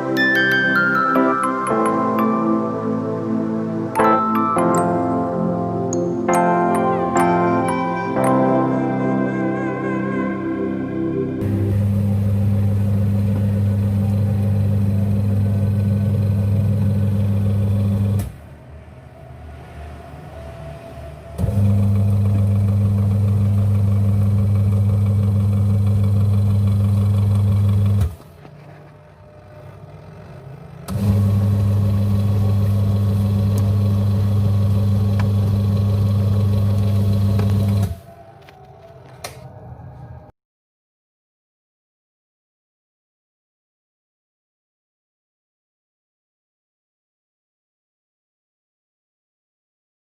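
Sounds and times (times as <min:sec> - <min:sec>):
washing machine motor humming: 0:11.4 - 0:18.3, 0:21.4 - 0:38.1.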